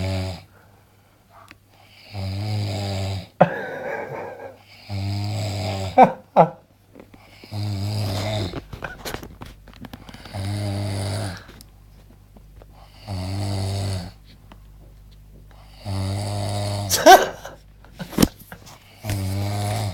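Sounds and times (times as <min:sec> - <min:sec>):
man snoring loudly: 0:00.0 - 0:00.5, 0:02.0 - 0:06.4, 0:07.3 - 0:08.6, 0:10.1 - 0:11.6, 0:12.8 - 0:14.2, 0:15.7 - 0:17.6, 0:19.0 - 0:19.9.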